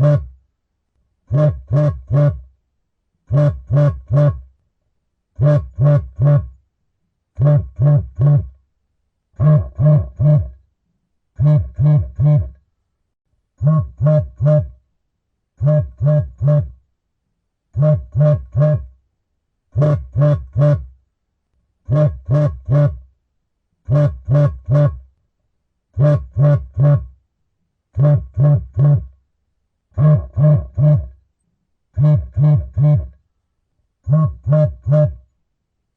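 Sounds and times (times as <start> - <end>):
mobile phone vibrating: 0.0 - 0.4, 7.4 - 8.6, 9.4 - 10.6, 11.4 - 12.6, 13.6 - 14.8, 15.6 - 16.8, 17.8 - 18.9, 26.0 - 27.1, 28.0 - 29.1, 30.0 - 31.1, 32.0 - 33.1.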